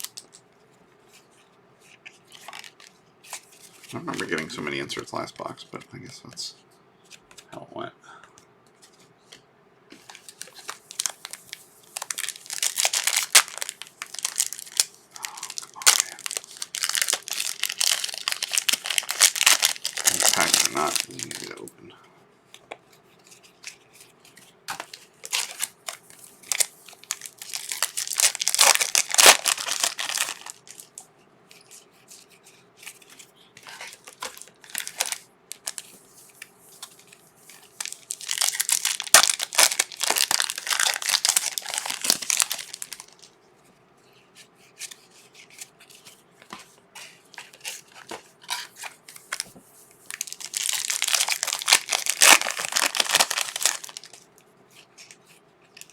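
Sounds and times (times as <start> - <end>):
wrappers tearing and crinkling: 2.3 - 2.9, 10.1 - 21.7, 24.7 - 31.0, 32.8 - 36.0, 36.8 - 43.3, 47.3 - 49.5, 50.1 - 54.3.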